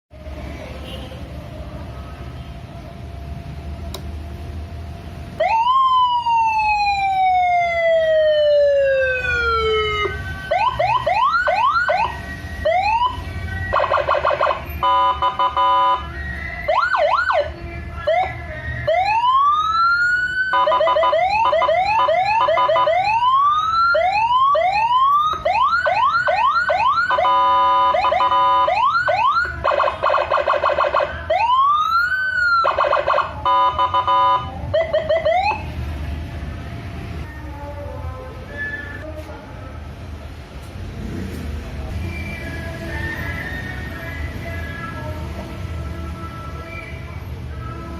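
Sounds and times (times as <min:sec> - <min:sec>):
electronic vehicle siren: 0:05.4 - 0:35.9, 0:42.0 - 0:45.1.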